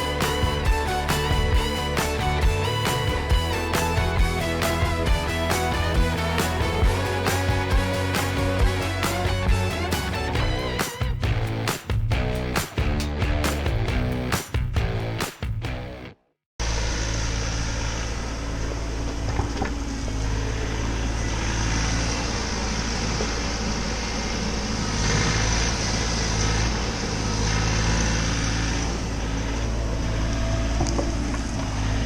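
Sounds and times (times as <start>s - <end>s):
diesel engine running: 0.0s - 11.7s
music: 0.0s - 16.2s.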